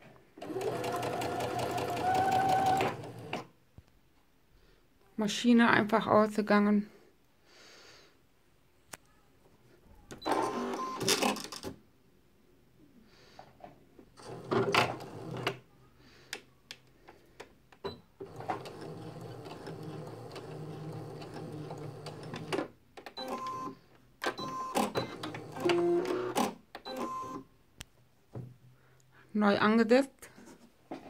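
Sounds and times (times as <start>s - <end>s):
sewing machine running: 0.4s - 3.4s.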